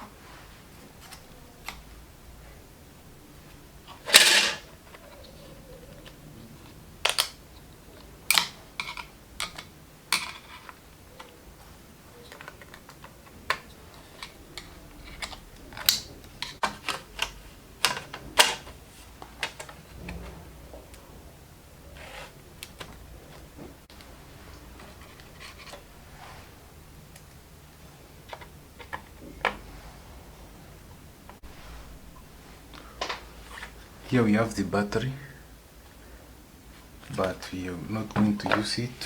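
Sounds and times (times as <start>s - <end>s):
plastic and metal parts clicking: 4.0s - 7.4s, 8.0s - 11.4s, 12.2s - 20.2s.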